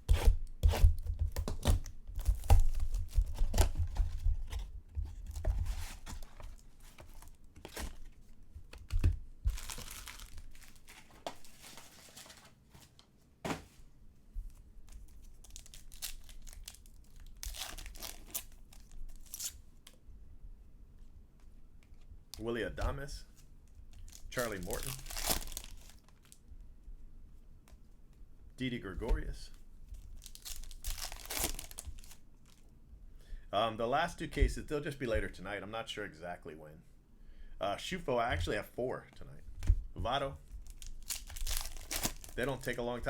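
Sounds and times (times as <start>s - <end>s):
packaging tearing and crinkling: 9.5s - 12.5s, 15.1s - 19.6s, 23.9s - 26.4s, 30.2s - 32.6s, 40.6s - 42.8s.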